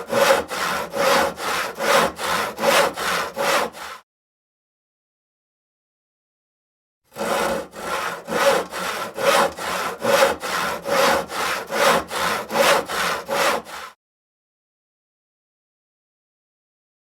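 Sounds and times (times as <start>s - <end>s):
hand saw cutting wood: 0.0s - 4.0s, 7.1s - 14.0s.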